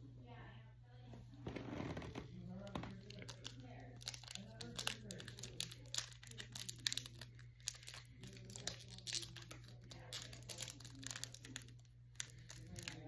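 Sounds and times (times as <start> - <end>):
steady low hum: 0.0 - 13.0
plastic packaging crinkling: 2.5 - 13.0.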